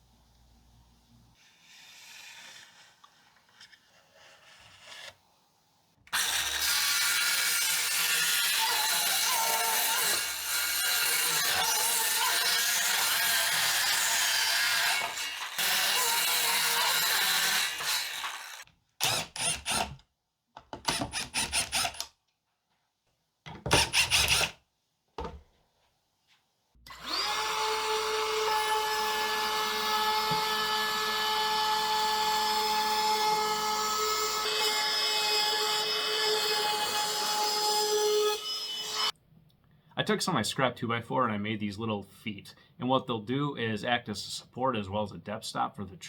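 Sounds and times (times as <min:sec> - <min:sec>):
power tools cutting wood: 0:06.1 - 0:20.0, 0:20.8 - 0:22.0, 0:23.7 - 0:24.6, 0:26.9 - 0:39.1.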